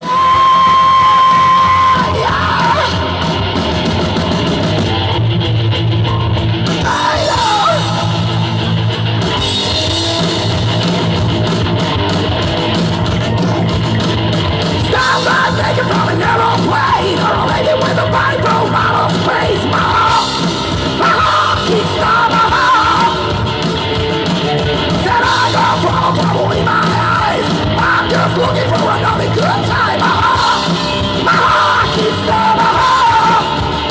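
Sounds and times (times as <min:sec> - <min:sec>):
shouted singing: 0:00.0 - 0:03.5, 0:06.8 - 0:08.3, 0:14.8 - 0:23.6, 0:25.0 - 0:33.9
live heavy rock band: 0:00.0 - 0:33.9.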